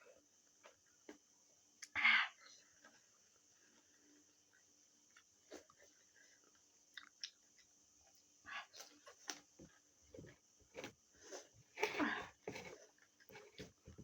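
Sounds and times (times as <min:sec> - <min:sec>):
wet chewing and lip smacks: 0:04.5 - 0:08.2.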